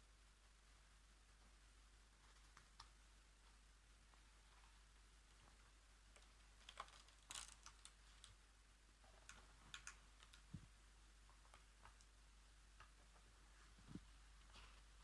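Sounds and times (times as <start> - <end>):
paper rustle: 6.6 - 8.3.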